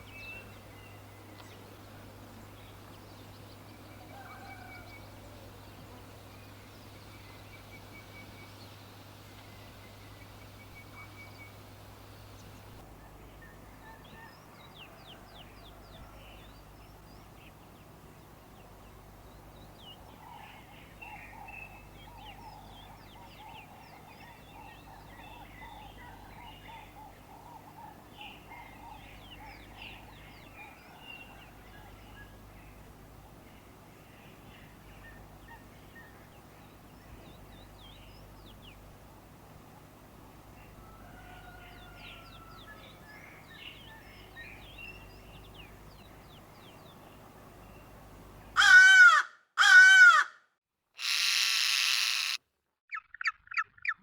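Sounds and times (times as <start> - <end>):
birds chirping and trilling: 2.4 - 38.9, 40.5 - 50.2, 51.0 - 54.0
rapid low chattering bird calls: 51.0 - 54.0.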